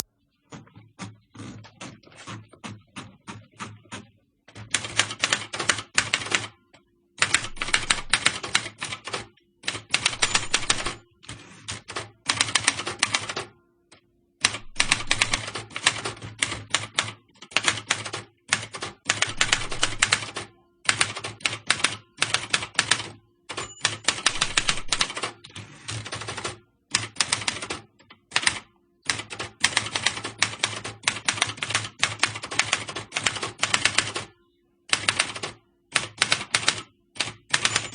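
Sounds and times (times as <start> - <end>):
typewriter key strikes: 9.8 - 11.0, 23.5 - 25.3, 36.0 - 37.9.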